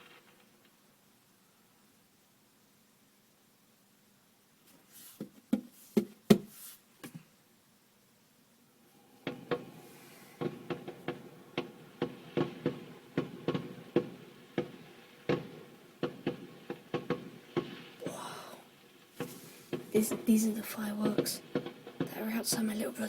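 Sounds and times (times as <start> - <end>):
fireworks pops and bangs: 0.0 - 0.9, 4.7 - 7.3, 9.0 - 23.0.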